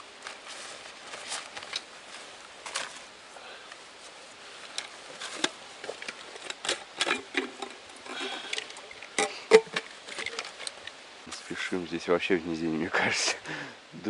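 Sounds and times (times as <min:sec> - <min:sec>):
rustling: 0:00.0 - 0:12.2.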